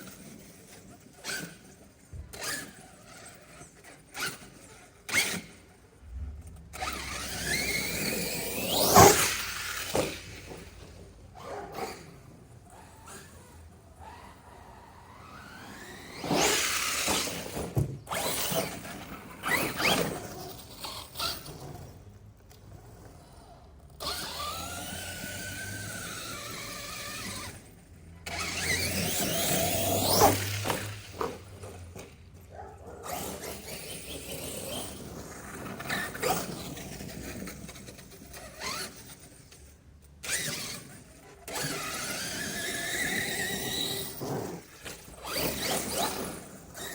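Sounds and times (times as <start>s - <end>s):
electric rc car whining: 0.0s - 46.9s.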